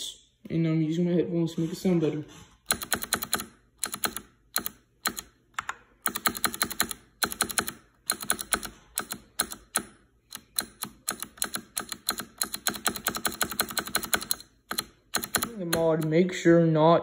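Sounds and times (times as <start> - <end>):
mechanical keyboard key clicks: 2.7 - 16.1.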